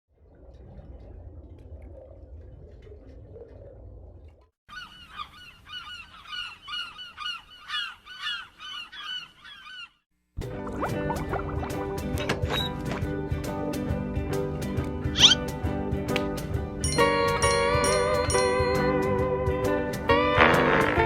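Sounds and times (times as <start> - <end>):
bird honking calls: 15.2 - 15.4.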